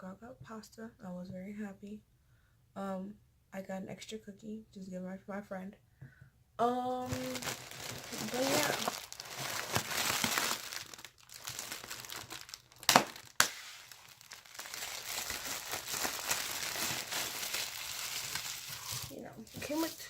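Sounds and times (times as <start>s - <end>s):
packaging crinkling: 7.1s - 20.0s
sharp snaps: 12.8s - 13.7s.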